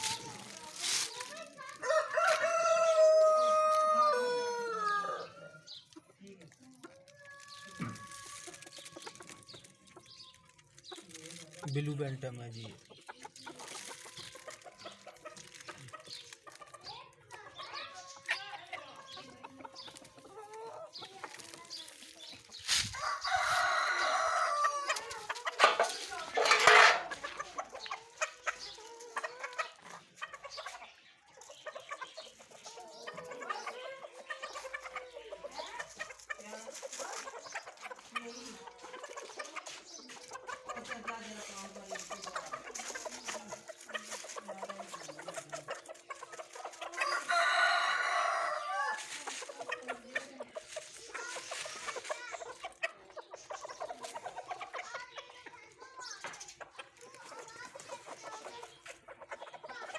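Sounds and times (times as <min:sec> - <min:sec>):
chickens clucking: 0:00.0 - 0:59.9
rooster crowing: 0:01.8 - 0:05.5, 0:23.0 - 0:25.0, 0:47.0 - 0:49.0.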